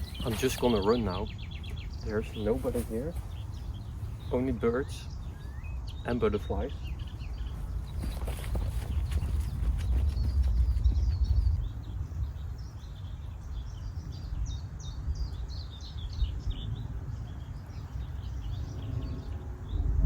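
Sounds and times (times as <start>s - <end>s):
songbirds chirping and singing: 0.0s - 20.0s
steady low rumble: 0.0s - 20.0s.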